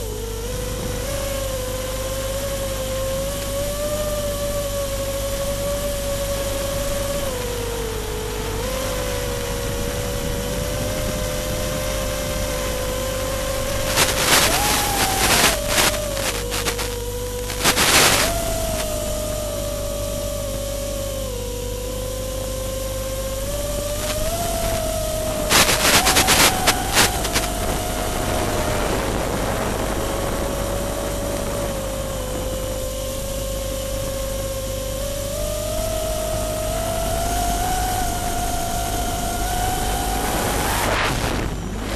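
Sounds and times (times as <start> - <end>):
drone motors whining: 0.0 - 41.9
rushing noise: 12.7 - 19.0, 23.7 - 30.4.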